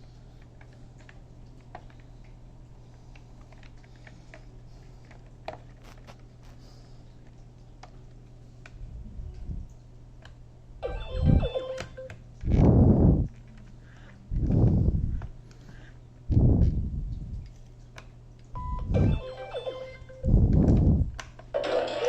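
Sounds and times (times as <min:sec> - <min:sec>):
low hum: 0:10.6 - 0:21.2.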